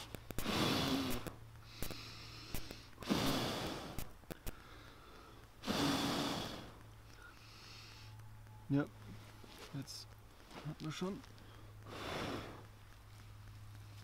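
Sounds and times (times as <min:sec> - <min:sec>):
quiet in-breaths: 0:00.0 - 0:08.3, 0:09.0 - 0:14.0
person blowing hard: 0:00.4 - 0:04.1, 0:05.6 - 0:06.8, 0:11.8 - 0:12.7.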